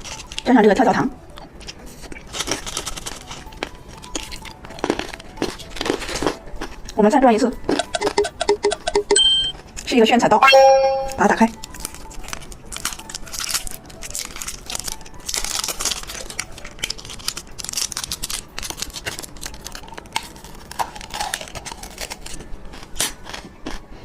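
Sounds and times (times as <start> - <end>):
plastic packaging crinkling: 1.7 - 6.3, 11.6 - 22.4.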